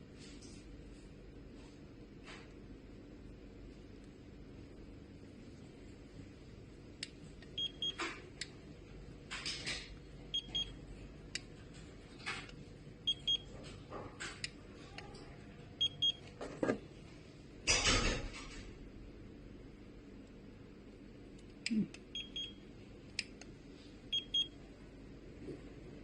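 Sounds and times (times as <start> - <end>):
thermometer double beep: 22.2 - 22.6, 24.1 - 24.6.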